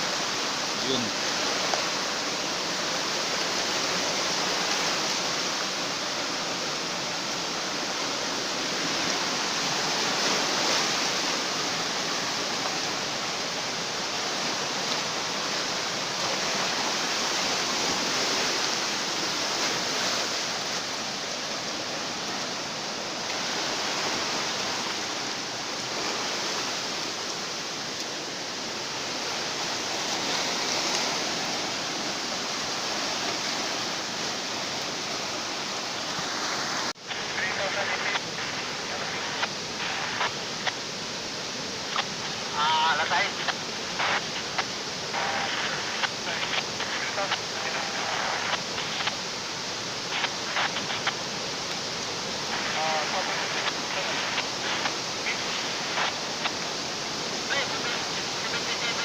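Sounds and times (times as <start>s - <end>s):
floodwater rushing: 0.0s - 59.0s.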